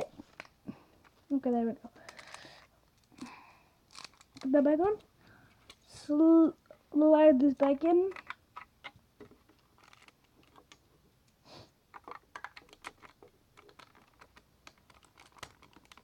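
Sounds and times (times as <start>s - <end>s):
plastic bricks clicking: 11.9s - 16.0s.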